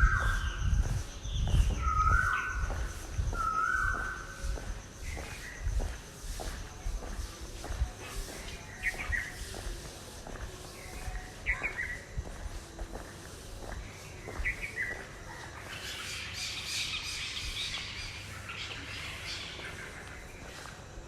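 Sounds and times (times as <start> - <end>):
small birds chirping and twittering: 0.0 - 21.0.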